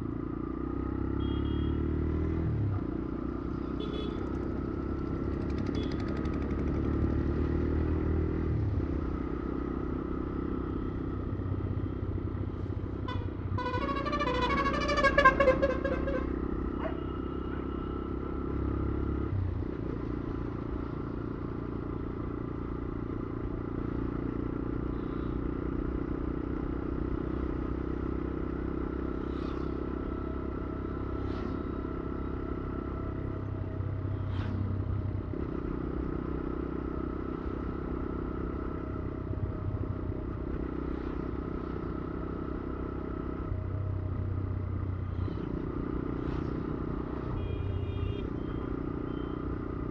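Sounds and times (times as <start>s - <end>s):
motorcycle engine running: 3.0s - 12.2s.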